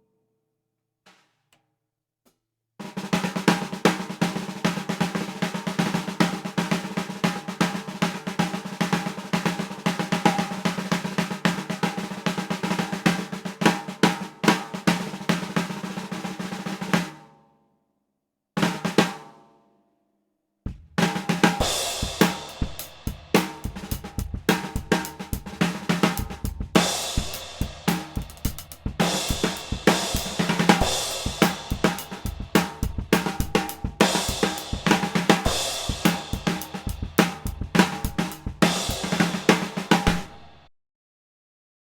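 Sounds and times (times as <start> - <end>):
snare drum: 2.8 - 17.2, 18.6 - 19.4, 20.7 - 40.7
bass drum: 20.7 - 40.7
hi-hat: 21.8 - 40.5.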